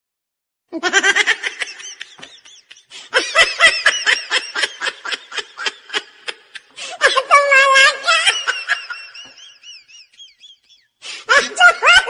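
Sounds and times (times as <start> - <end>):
high-pitched laughter: 0.8 - 12.0.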